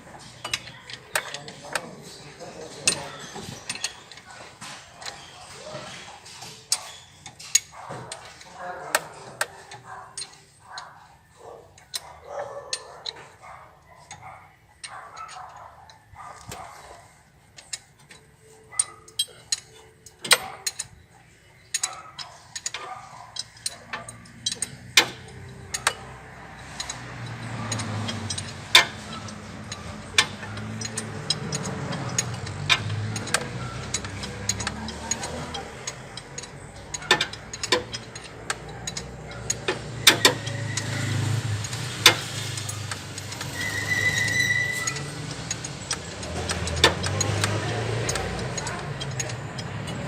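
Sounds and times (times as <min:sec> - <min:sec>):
metallic clicks and knocks: 0:00.0 - 0:11.0, 0:11.6 - 0:50.0
ratchet wrench clicks: 0:00.3 - 0:01.9, 0:02.5 - 0:04.4, 0:11.8 - 0:13.2, 0:17.6 - 0:21.0, 0:21.6 - 0:50.0.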